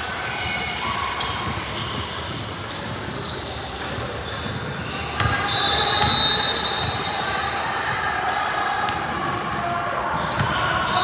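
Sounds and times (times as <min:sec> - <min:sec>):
crowd voices: 0:00.0 - 0:11.0
basketball bouncing on hardwood: 0:05.2 - 0:07.1.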